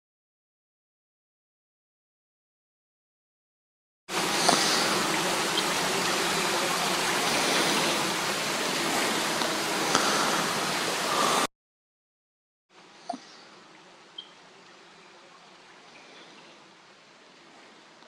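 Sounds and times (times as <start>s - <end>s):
creek water rushing: 4.1s - 11.5s
faint woodland background: 4.1s - 11.5s, 12.7s - 18.0s.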